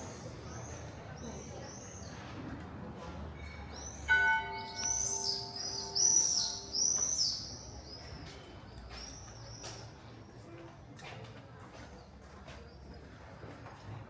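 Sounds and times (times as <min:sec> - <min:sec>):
birds chirping: 0:03.8 - 0:09.5
bell ringing: 0:04.1 - 0:06.8.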